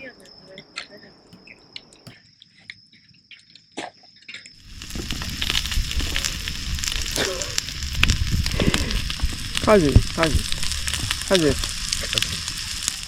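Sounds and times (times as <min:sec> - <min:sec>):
crickets chirping: 0:00.0 - 0:13.0
food sizzling in a hot pan: 0:04.6 - 0:13.0.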